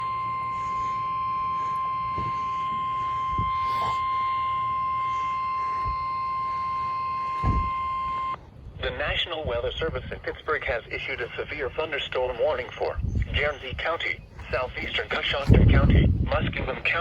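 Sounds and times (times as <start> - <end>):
steady high alarm tone: 0.0 - 8.4
soft low thumps: 7.3 - 7.9, 13.0 - 17.0.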